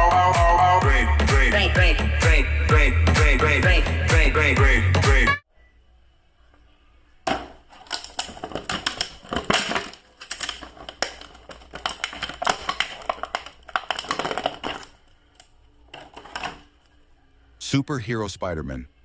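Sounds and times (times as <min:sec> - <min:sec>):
plastic clicks and crinkles: 0:07.7 - 0:17.0.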